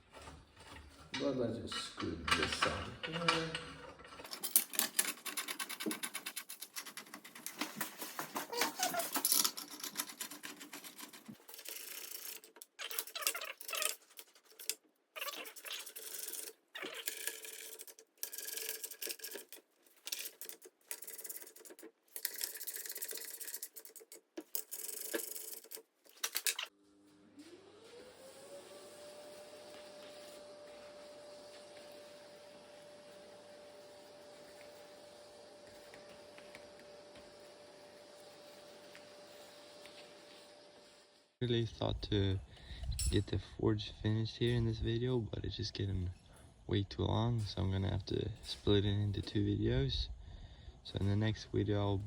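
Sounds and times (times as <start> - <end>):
ratcheting clicks of screws: 8.8 - 26.7.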